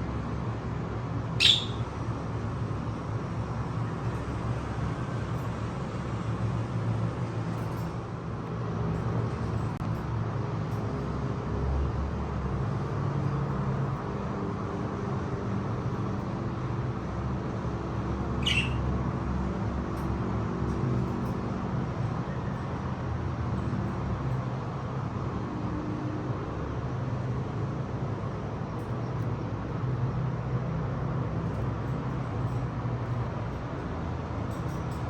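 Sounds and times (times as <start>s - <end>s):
budgerigar chirp: 1.4s - 1.9s, 18.3s - 18.9s.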